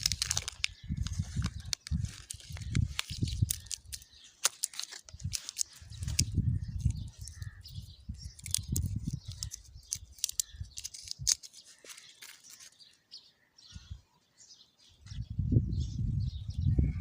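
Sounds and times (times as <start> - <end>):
plastic candy wrappers crinkling: 0.0 - 7.6, 8.2 - 12.9.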